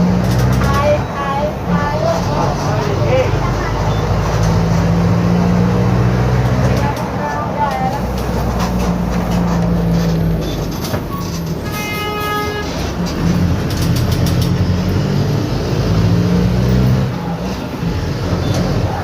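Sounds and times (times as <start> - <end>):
bus diesel engine droning: 0.0 - 19.0.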